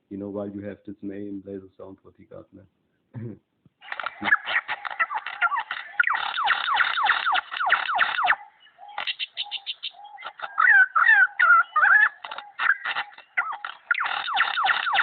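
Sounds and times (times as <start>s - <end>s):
bird clicks and warbled whistles: 3.9s - 10.6s, 11.5s - 15.0s.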